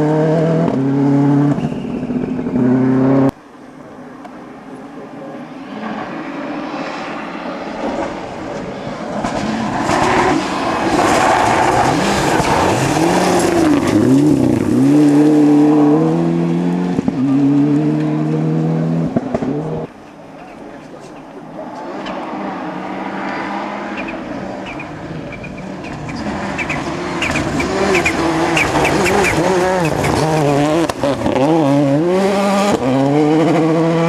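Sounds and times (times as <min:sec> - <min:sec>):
rally car engine passing: 0:00.0 - 0:34.0
engine note dipping with gear changes: 0:07.6 - 0:33.7.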